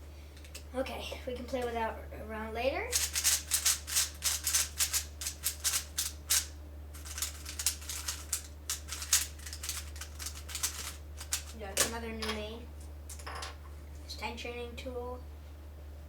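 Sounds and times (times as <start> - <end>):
puzzle cube layers clacking: 7.0 - 11.5.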